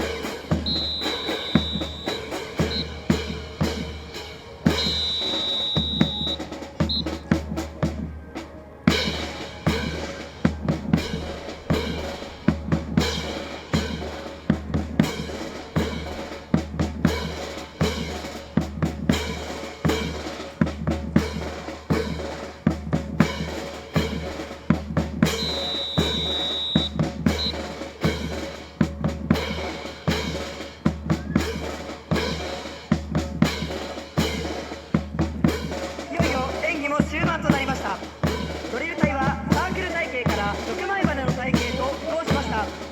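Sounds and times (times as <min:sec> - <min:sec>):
marching drum cadence: 0:00.0 - 0:42.9
high steady tone: 0:00.6 - 0:03.5, 0:04.8 - 0:07.4, 0:25.4 - 0:27.6.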